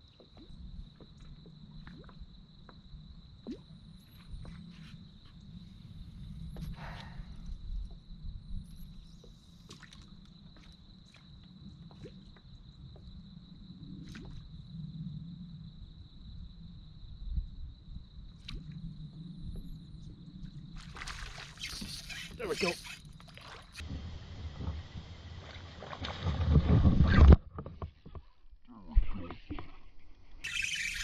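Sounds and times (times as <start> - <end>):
water drips and sloshes: 0.0 - 4.9, 8.6 - 14.6, 19.5 - 23.9
thin high whine: 30.4 - 31.0.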